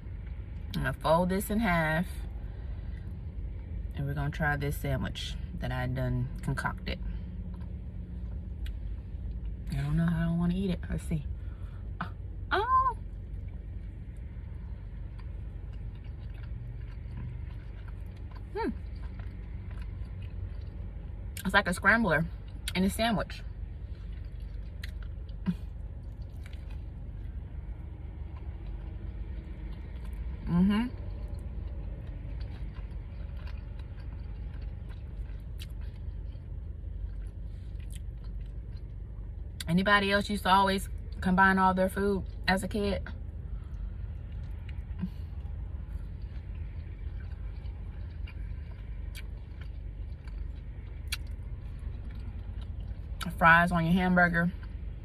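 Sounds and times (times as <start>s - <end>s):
steady low hum: 0.0s - 55.0s
person chewing food: 13.2s - 21.4s, 23.4s - 39.7s, 43.2s - 53.3s.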